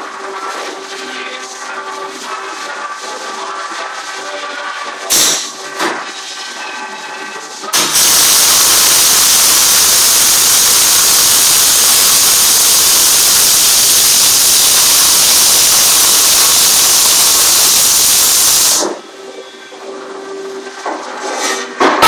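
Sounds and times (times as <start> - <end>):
welding arc hissing: 5.1 - 5.5, 7.7 - 19.0.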